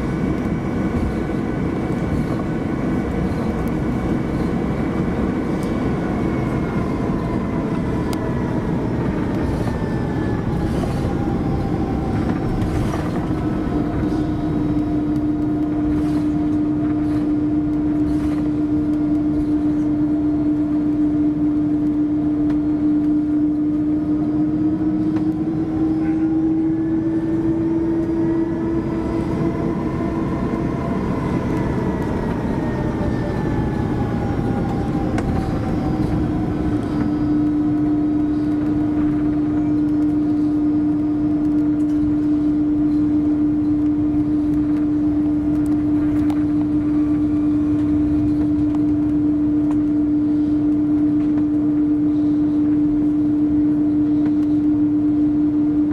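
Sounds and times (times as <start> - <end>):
jet engine cabin drone: 0.0 - 55.9.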